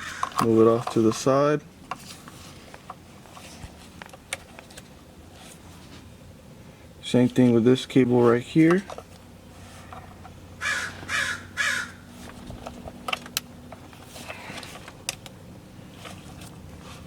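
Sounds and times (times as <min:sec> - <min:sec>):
crow cawing: 0:10.6 - 0:12.1.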